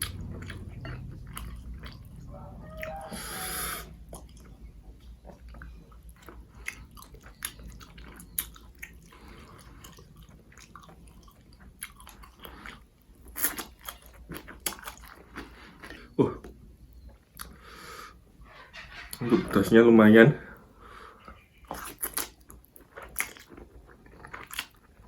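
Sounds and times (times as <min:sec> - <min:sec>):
chewing noodles: 0:00.0 - 0:16.2, 0:21.6 - 0:25.0
wet mouth clicks and smacks: 0:21.7 - 0:22.5.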